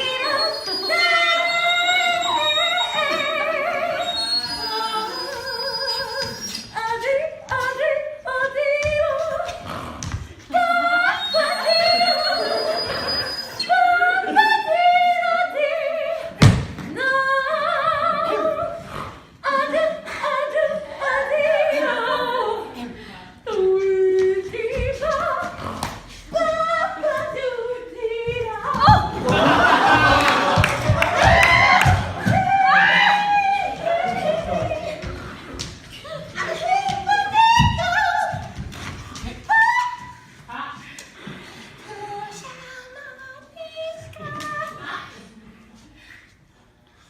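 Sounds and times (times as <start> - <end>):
scat singing voices: 0.0 - 40.3.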